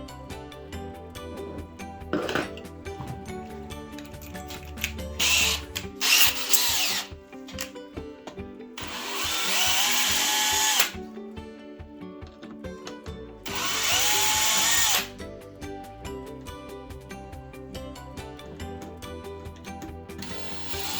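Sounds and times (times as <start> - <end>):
background music: 0.0 - 20.9
cordless drill motor whining: 0.7 - 7.7, 8.8 - 11.0, 13.4 - 15.2, 19.5 - 20.9.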